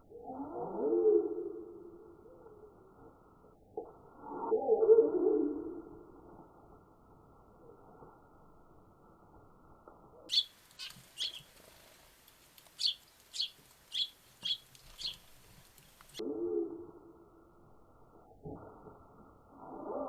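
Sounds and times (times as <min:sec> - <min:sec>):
songbirds chirping: 0:10.3 - 0:16.2.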